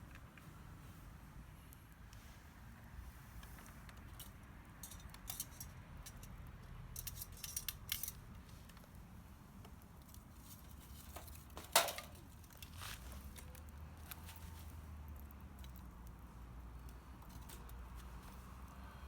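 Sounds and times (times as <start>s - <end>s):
small objects clinking: 4.1s - 6.4s, 7.0s - 8.2s, 10.4s - 14.6s.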